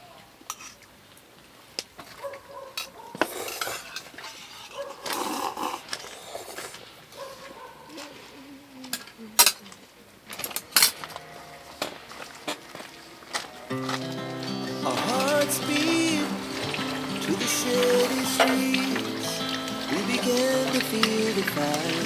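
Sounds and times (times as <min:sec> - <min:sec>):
dishes and cutlery clinking: 0:10.3 - 0:22.0.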